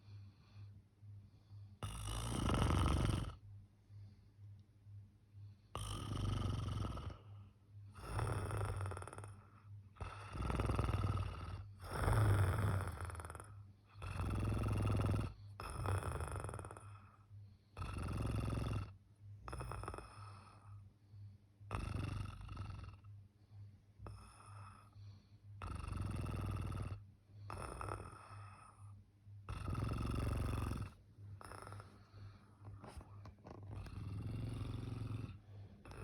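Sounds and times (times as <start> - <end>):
person snoring loudly: 1.8 - 3.4, 5.8 - 7.3, 8.0 - 9.4, 10.0 - 17.0, 17.8 - 18.9, 19.5 - 20.6, 21.7 - 23.0, 25.6 - 28.8, 29.5 - 32.3, 33.5 - 36.0.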